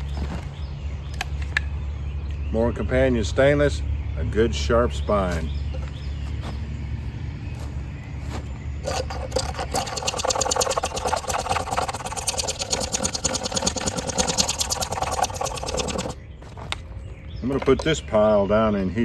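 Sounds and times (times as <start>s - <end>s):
knife scraping wood: 8.3s - 17.0s.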